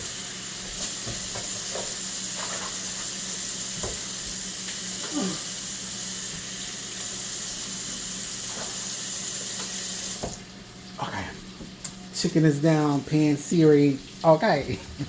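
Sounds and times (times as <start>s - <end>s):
chicken sizzling in a skillet: 0.0s - 10.6s
faucet running: 0.0s - 15.0s.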